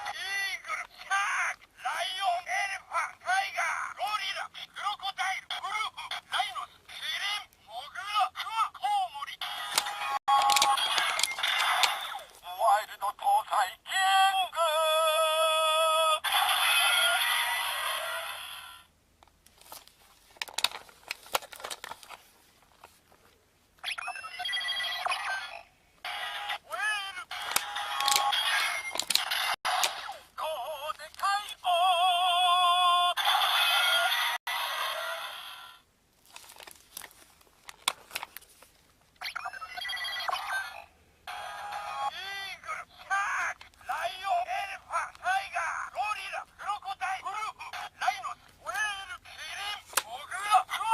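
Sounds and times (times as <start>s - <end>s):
plastic toy clicks: 9.7s - 12.1s, 27.3s - 30.0s
electronic toy beeping: 39.2s - 40.7s.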